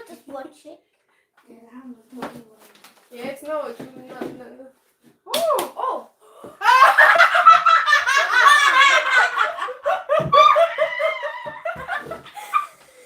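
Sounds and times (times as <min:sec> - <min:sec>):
people laughing: 0:06.6 - 0:12.8.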